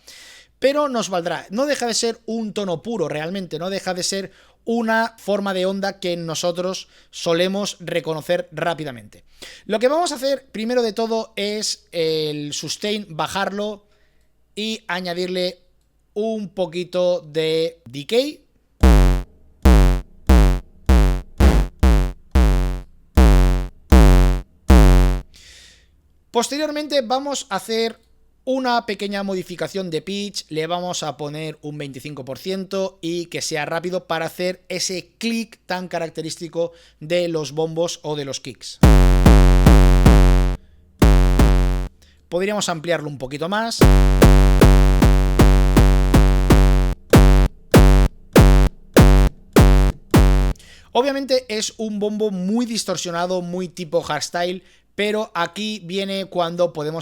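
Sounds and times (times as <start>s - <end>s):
buzzy kick drum hits: 18.8s - 25.3s, 38.8s - 41.9s, 43.8s - 50.6s.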